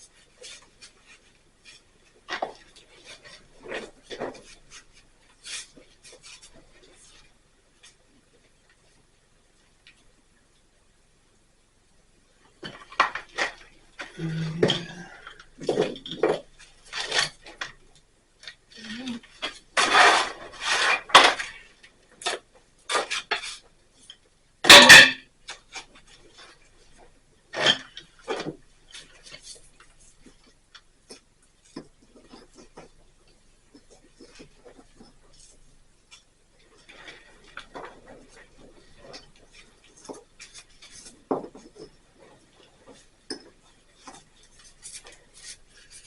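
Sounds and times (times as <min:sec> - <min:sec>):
tool clinking on stone: 0:24.7 - 0:25.2.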